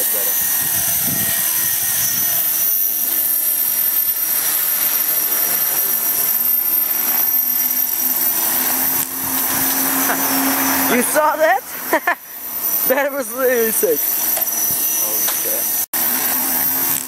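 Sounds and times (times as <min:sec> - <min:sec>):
model helicopter whine: 0:00.0 - 0:17.0
wind noise on microphone: 0:00.3 - 0:02.6.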